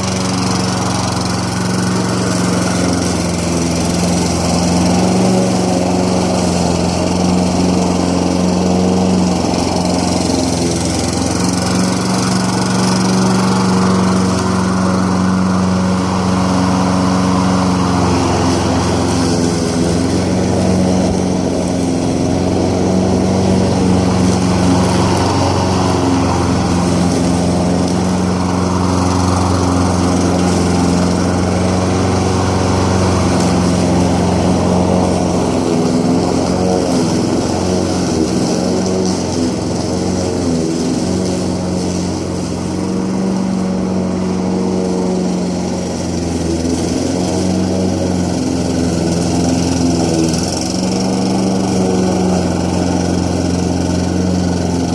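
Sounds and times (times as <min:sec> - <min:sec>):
lawn mower engine cutting grass: 0:00.0 - 0:54.9.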